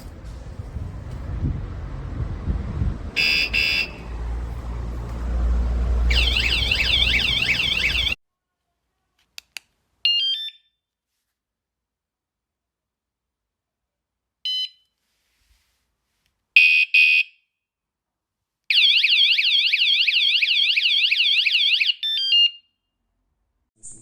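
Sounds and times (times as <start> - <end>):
low rumble: 0.0 - 5.7
bike alarm chirps: 3.2 - 4.0, 6.1 - 8.2
warbling alarm siren: 6.1 - 8.2.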